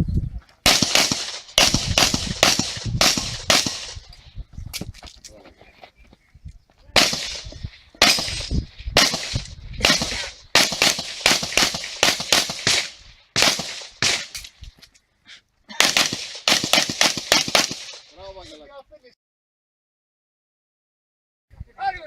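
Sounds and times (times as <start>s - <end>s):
handgun shots: 8.0s - 14.5s.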